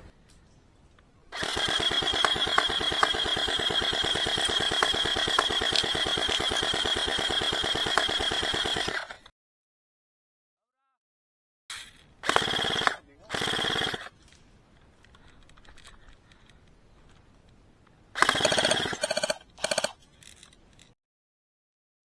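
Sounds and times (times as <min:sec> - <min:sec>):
airsoft gun full-auto burst: 0:01.3 - 0:09.3, 0:11.8 - 0:14.4, 0:18.1 - 0:20.7.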